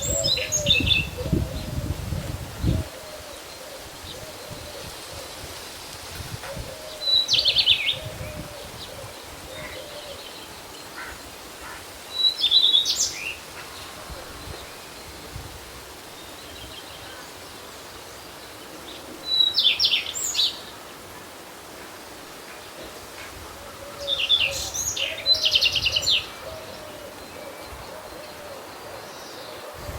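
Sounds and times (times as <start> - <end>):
songbird singing: 0.0 - 5.4, 6.2 - 21.3, 21.9 - 29.9
wind noise: 0.0 - 9.8
faint bird calls: 8.1 - 11.9.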